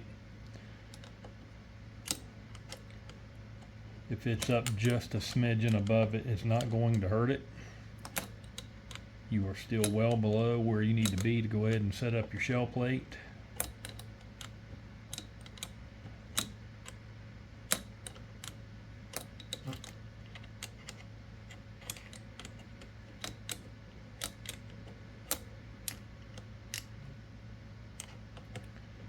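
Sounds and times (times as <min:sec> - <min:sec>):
steady low hum: 0:00.0 - 0:29.0
metal parts clicking: 0:02.0 - 0:03.7, 0:04.3 - 0:07.1, 0:08.0 - 0:10.4, 0:11.0 - 0:11.8, 0:13.6 - 0:17.0, 0:17.7 - 0:27.0, 0:28.0 - 0:28.8.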